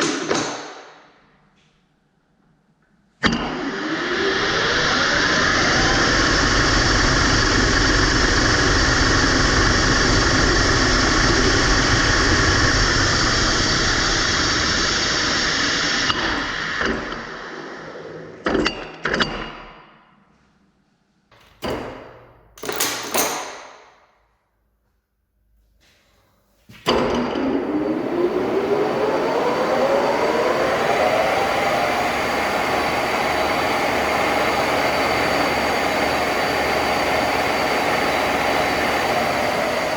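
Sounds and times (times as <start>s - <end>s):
sharp knocks and clatters: 21.3s - 24.0s
lathe spinning: 26.9s - 39.9s.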